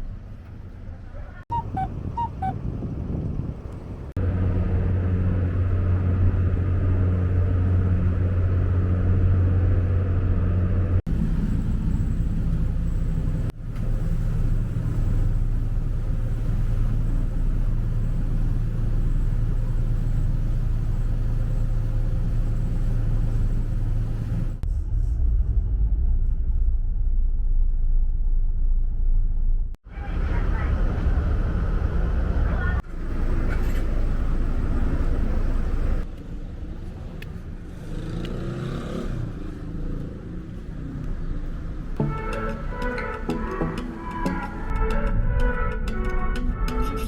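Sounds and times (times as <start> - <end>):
engine running: 1.6 - 36.4.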